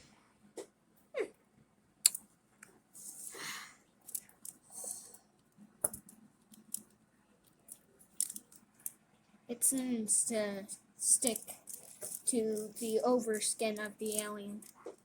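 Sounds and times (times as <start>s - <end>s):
small tools clicking and tapping: 4.1s - 5.1s, 5.8s - 9.0s, 11.2s - 15.0s.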